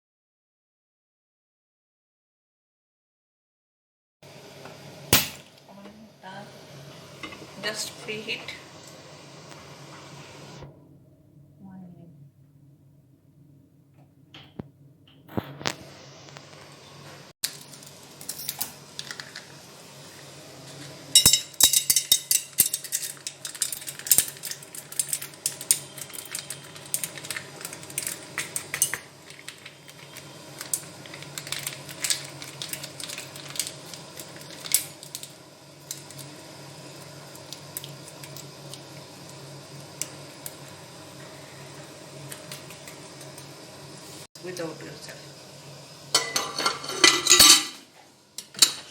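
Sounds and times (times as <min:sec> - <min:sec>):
metal cookware clinking: 0:18.2 - 0:19.2, 0:21.1 - 0:26.6, 0:46.1 - 0:47.8, 0:48.4 - 0:48.9.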